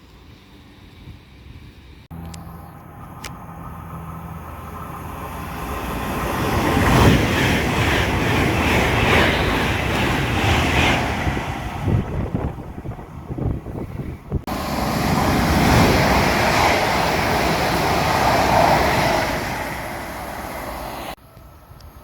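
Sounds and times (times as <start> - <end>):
train wheels rumbling: 2.1 - 21.4
train rushing past: 3.4 - 21.2
wind buffeting microphone: 4.5 - 22.0.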